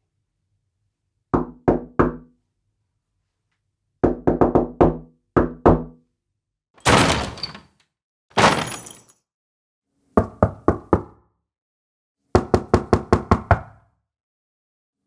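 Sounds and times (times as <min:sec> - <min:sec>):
knocking on wooden door: 0:04.1 - 0:05.9, 0:10.2 - 0:11.1, 0:12.4 - 0:13.7.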